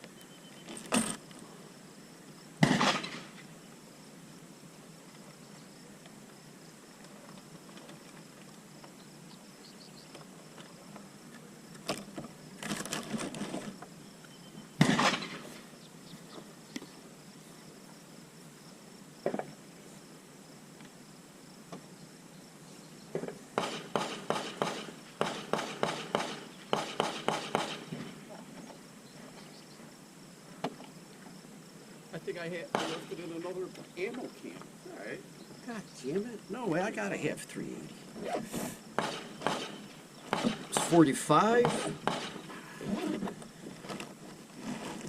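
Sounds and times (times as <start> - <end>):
faint insect buzz: 0.0 - 45.0
sharp bang: 32.7 - 33.2.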